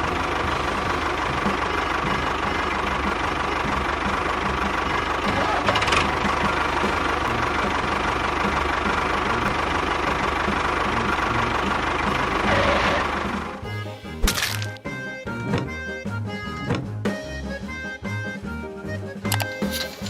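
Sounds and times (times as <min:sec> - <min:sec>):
small engine running: 0:00.0 - 0:14.8.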